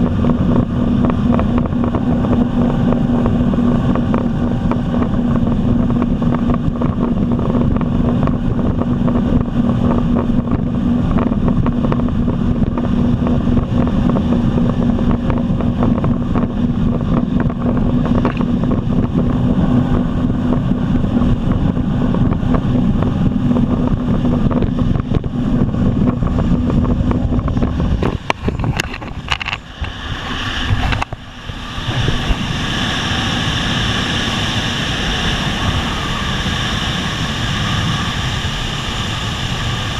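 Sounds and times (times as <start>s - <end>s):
jet ski engine running: 0.0s - 39.9s
water rushing past hull: 0.0s - 39.9s
wind buffeting microphone: 0.0s - 39.9s.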